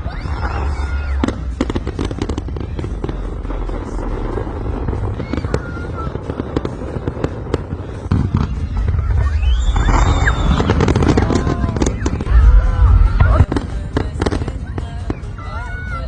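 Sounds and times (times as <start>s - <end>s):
fireworks cracking: 0.0s - 16.0s
low rumble: 7.8s - 14.7s.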